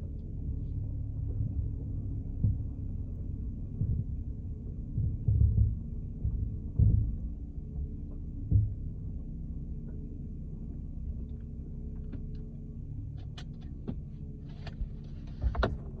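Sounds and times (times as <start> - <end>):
car rolling with low rumble: 0.0 - 16.0
suspension creaks and clicks: 13.1 - 16.0.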